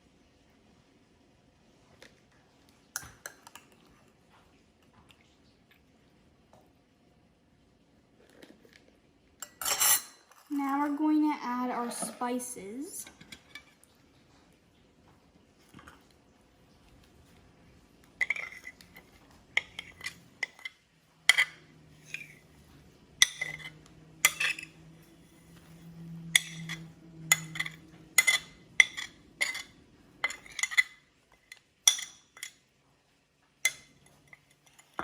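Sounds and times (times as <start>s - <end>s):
spoon clinking against bowl: 23.2s - 24.8s, 26.3s - 32.6s.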